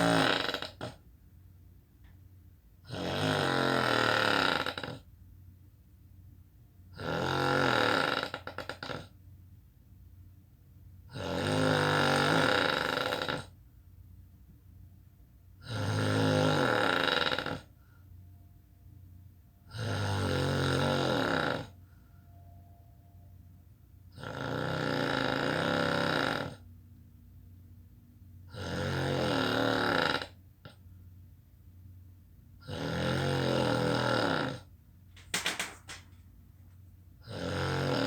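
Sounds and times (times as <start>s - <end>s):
person snoring: 0.0s - 1.0s, 2.9s - 5.0s, 7.0s - 9.1s, 11.2s - 13.5s, 15.6s - 17.7s, 19.7s - 21.8s, 24.2s - 26.6s, 28.5s - 30.4s, 32.6s - 34.7s, 37.3s - 38.0s.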